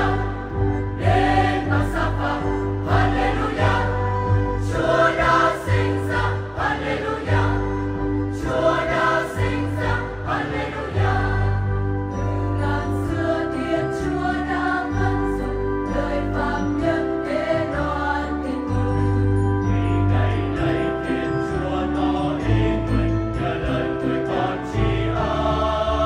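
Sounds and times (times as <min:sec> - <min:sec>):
church choir singing a hymn: 0:00.0 - 0:18.9, 0:19.6 - 0:26.0
instrumental accompaniment with bass: 0:00.0 - 0:26.0.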